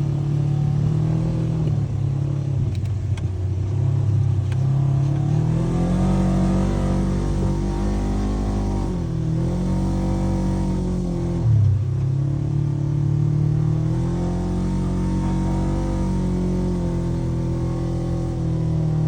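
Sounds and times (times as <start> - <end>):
utility vehicle engine revving: 0.0 - 19.0.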